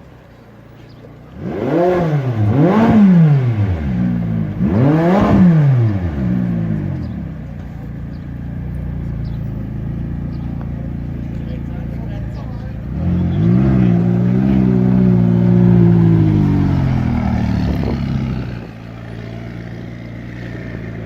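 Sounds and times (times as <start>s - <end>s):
car engine revving and idling: 0.0s - 21.0s.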